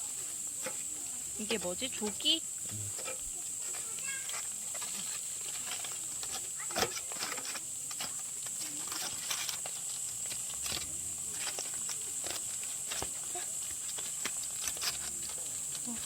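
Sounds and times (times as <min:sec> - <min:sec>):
fish grilling crackles and pops: 0:00.0 - 0:16.0
steady high hiss: 0:00.0 - 0:16.0.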